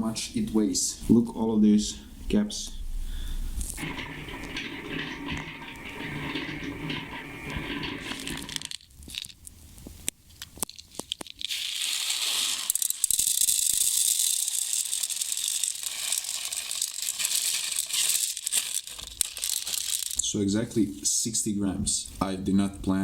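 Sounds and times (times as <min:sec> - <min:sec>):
pellets clicking: 0:03.7 - 0:09.4, 0:10.6 - 0:20.5
pellets poured rattling: 0:03.7 - 0:09.4, 0:10.7 - 0:20.7.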